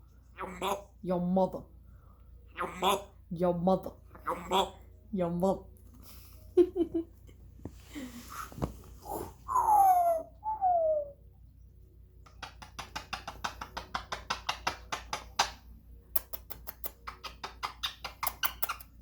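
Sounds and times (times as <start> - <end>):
parrot whistled calls: 9.5 - 11.2.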